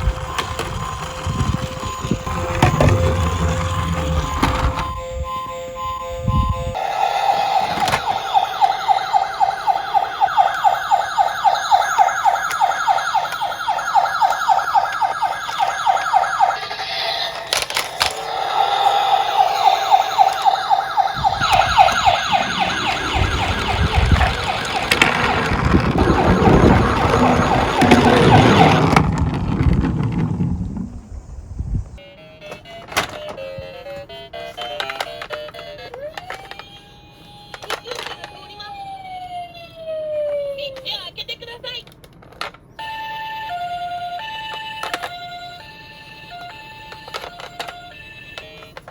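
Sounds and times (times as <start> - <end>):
electronic siren warbling: 0.0 - 29.2
toy cars rattling down a slope: 12.0 - 20.9, 21.5 - 31.0, 37.5 - 38.5.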